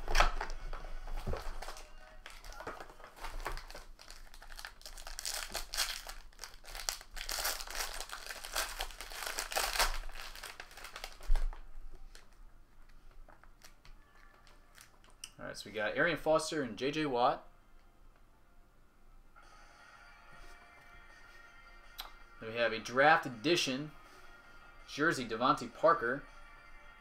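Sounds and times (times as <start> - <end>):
plastic packaging crinkling and tearing: 0.0 - 15.2.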